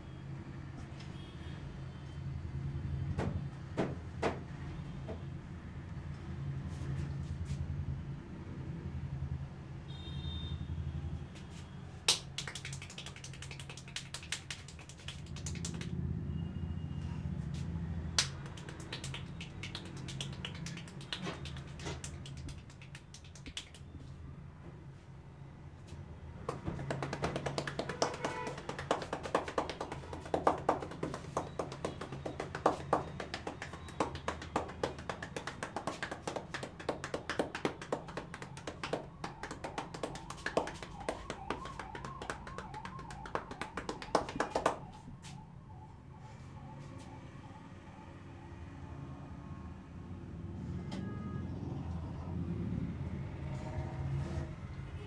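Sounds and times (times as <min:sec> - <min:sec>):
fingertip tapping on head: 0:26.5 - 0:44.8.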